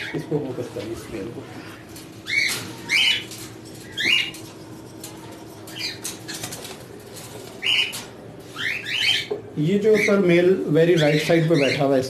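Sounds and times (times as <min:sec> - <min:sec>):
cockatiels chirping: 0:00.0 - 0:04.4, 0:07.6 - 0:10.3, 0:10.9 - 0:12.0.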